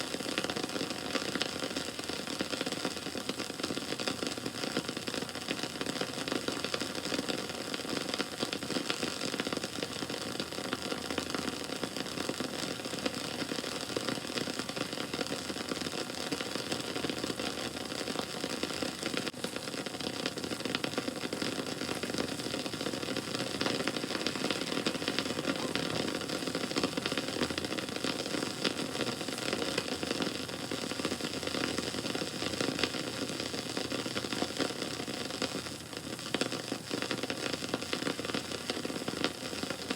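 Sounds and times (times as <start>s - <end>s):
bonfire crackling and popping: 0.0s - 39.9s
rush of flame: 20.3s - 32.0s.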